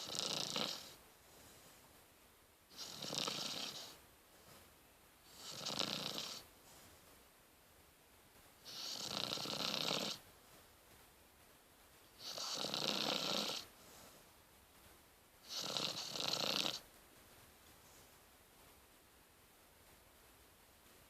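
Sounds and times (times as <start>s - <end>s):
puppy snoring: 0.0s - 1.6s, 2.7s - 4.6s, 5.2s - 6.8s, 8.6s - 10.2s, 12.2s - 14.1s, 15.4s - 16.9s.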